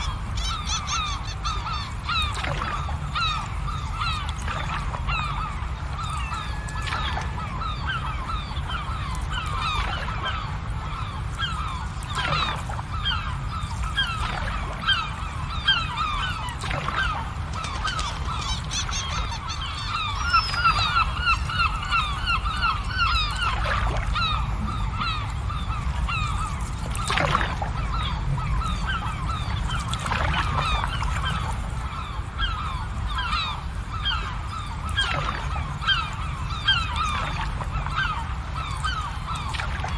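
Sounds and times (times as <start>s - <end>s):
flock of birds calling: 0.0s - 39.9s.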